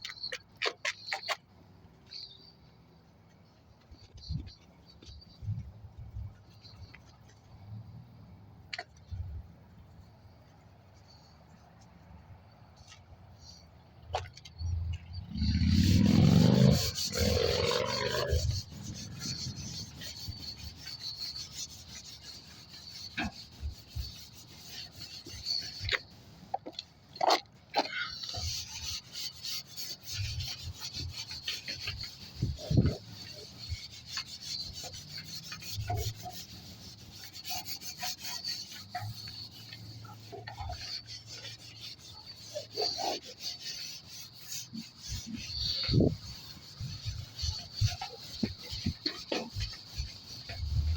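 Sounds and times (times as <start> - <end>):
rag scrubbing garage door: 15.6 - 50.9.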